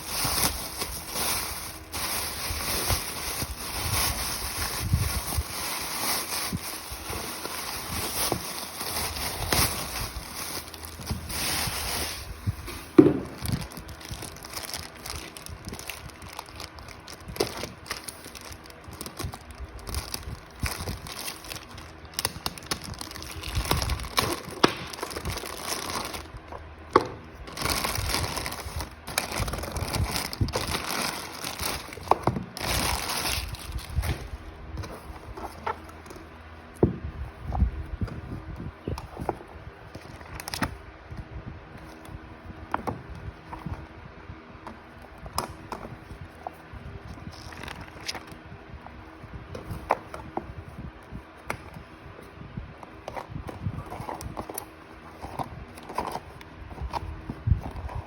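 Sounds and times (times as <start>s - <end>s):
plastic packaging crinkling: 0.0s - 36.4s, 39.9s - 40.8s, 44.8s - 48.4s.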